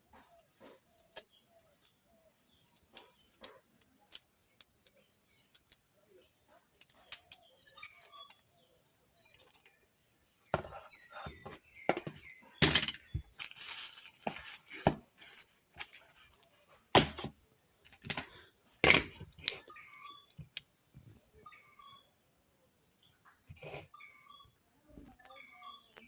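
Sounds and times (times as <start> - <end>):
small hard objects clicking: 2.7 - 5.9, 6.8 - 8.4, 12.0 - 16.4
scraping rustle: 13.3 - 16.5.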